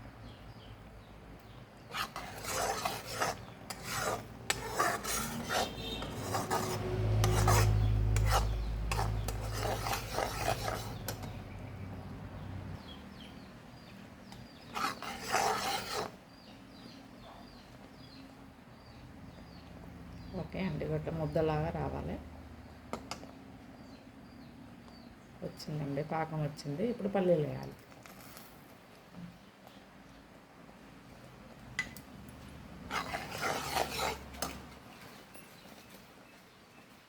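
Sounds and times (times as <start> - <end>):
ladle scraping pan: 1.9 - 11.5, 14.7 - 16.2, 32.8 - 35.4.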